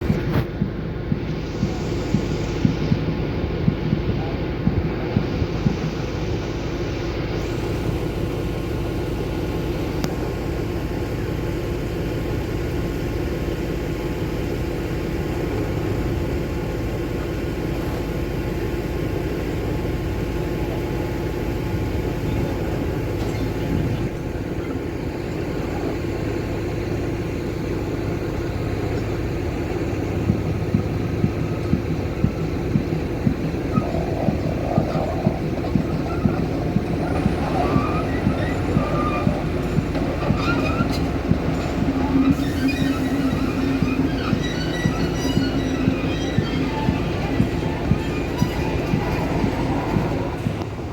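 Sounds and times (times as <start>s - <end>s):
train diesel engine idling: 0.0s - 50.9s.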